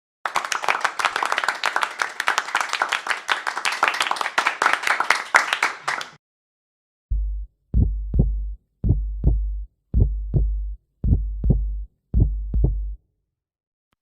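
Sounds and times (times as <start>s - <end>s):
group of hands clapping: 0.2s - 6.2s.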